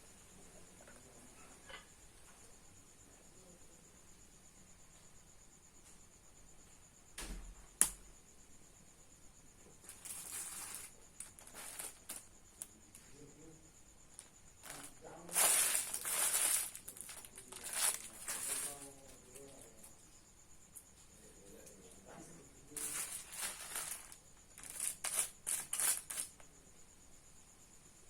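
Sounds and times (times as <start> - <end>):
faint high-pitched whine: 0.0 - 28.0
crinkling rustling: 9.8 - 12.3, 14.1 - 20.0, 22.7 - 26.4.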